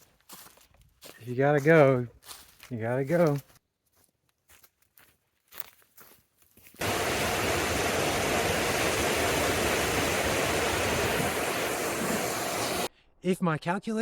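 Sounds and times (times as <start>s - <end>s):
loud steady rushing noise: 6.8s - 12.9s.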